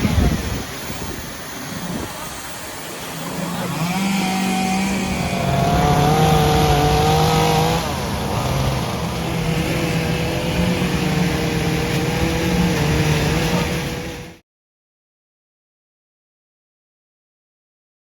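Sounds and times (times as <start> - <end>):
chainsaw running at high revs: 0.1 - 14.4.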